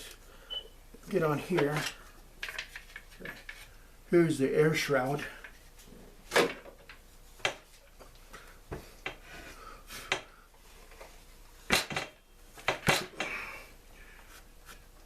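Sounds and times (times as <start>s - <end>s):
tools and parts clicking and clattering: 1.5s - 3.6s, 6.3s - 7.7s, 11.7s - 13.3s.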